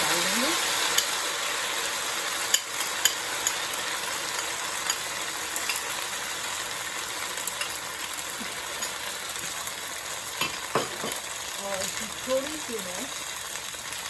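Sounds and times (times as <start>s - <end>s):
food sizzling in a pan: 0.0s - 14.0s
utensil clicking while stirring: 0.9s - 1.2s, 2.4s - 3.6s.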